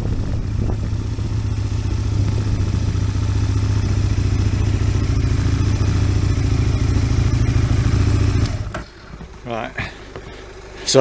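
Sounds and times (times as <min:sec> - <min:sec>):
motorcycle engine running loud: 0:00.0 - 0:11.0.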